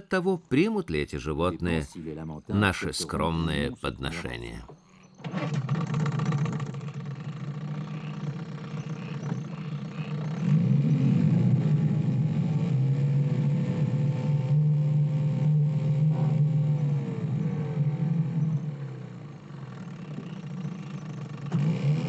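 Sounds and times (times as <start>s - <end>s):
motorboat engine running: 5.0s - 22.0s.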